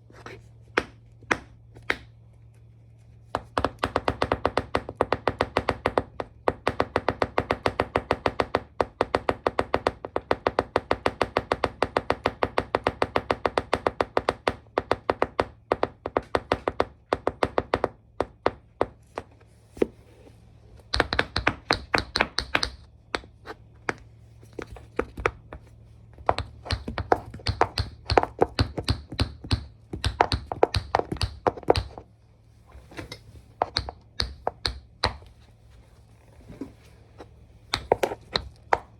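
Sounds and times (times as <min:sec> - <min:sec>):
tap shoes clicking on hard floor: 0:20.9 - 0:32.1, 0:33.0 - 0:35.4, 0:37.7 - 0:38.9.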